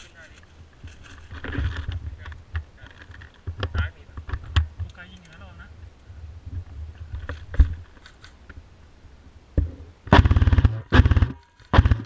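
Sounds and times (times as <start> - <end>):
airsoft gun bursts of rapid shots: 10.1 - 12.0.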